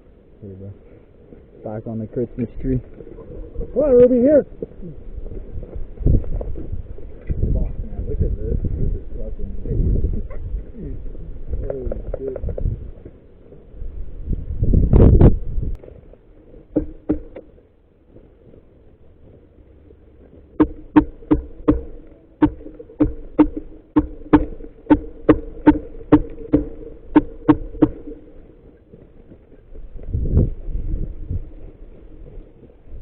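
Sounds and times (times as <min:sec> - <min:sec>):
low rumble: 0:20.6 - 0:33.0.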